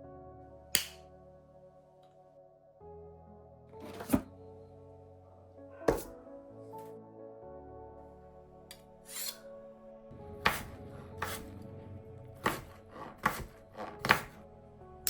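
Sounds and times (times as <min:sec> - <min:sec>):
soft background music: 0:00.0 - 0:15.0
sharp chopping strikes: 0:00.8 - 0:01.0, 0:12.4 - 0:14.4.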